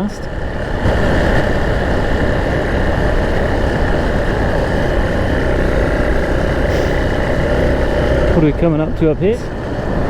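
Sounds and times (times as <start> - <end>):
motorbike engine running: 0.0 - 10.0.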